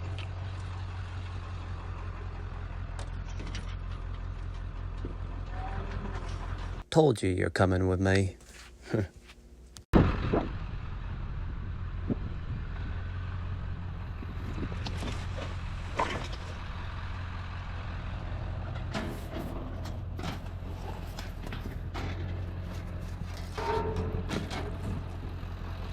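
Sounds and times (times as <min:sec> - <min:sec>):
truck engine drone: 0:00.0 - 0:06.8, 0:10.0 - 0:25.9
knocks and rattles: 0:02.8 - 0:06.8, 0:14.2 - 0:25.9.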